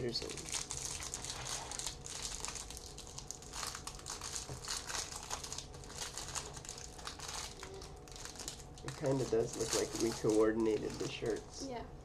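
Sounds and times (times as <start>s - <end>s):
plastic wrapper crinkling: 0.0s - 11.4s.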